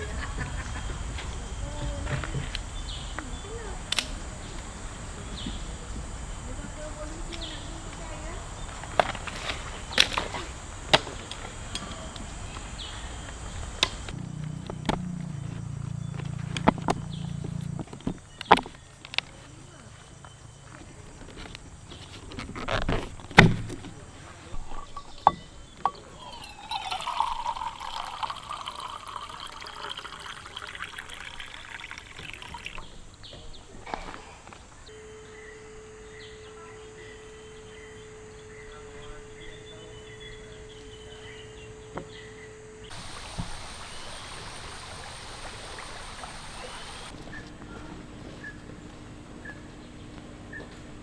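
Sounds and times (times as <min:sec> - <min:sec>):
handling knocks: 0:00.0 - 0:19.0, 0:21.9 - 0:26.3
water pouring into container: 0:26.0 - 0:33.0, 0:42.9 - 0:47.1.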